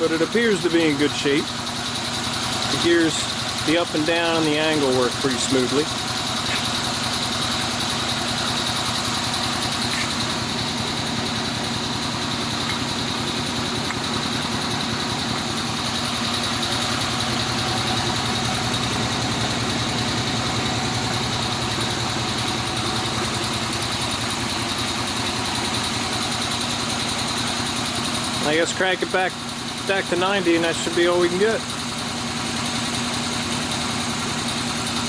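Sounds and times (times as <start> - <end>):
engine humming: 0.0 - 35.0.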